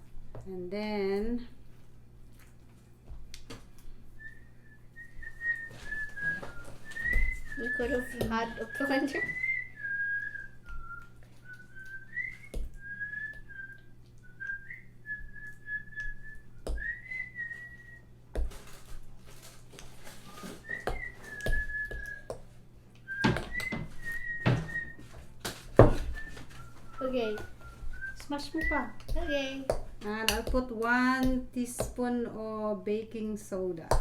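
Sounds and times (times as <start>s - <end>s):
person whistling a tune: 4.2s - 18.1s, 20.3s - 22.4s, 23.0s - 25.1s, 25.9s - 29.0s.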